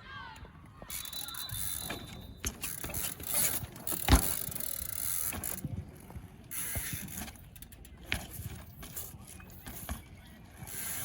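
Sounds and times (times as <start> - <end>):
bike freehub ratchet buzzing: 0.9 - 5.6, 6.5 - 7.9.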